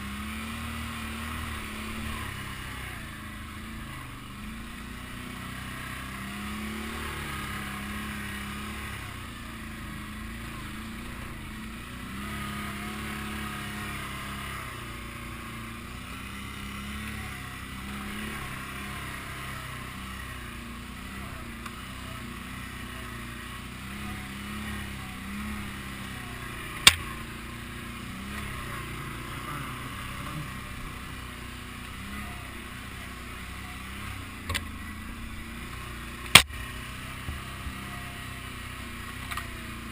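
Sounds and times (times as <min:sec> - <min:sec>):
atv engine revving: 0:00.0 - 0:39.9.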